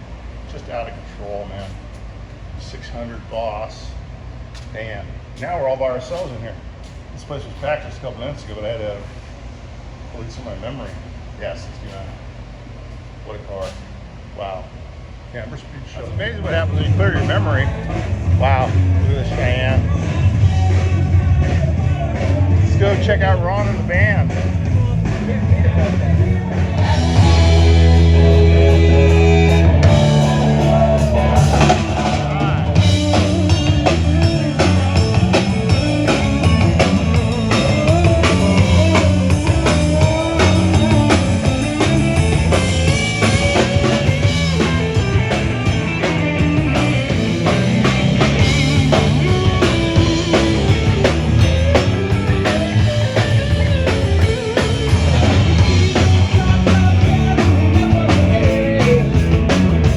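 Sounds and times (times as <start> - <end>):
rock band playing: 16.5 - 59.9
drum kit beat: 16.9 - 59.9.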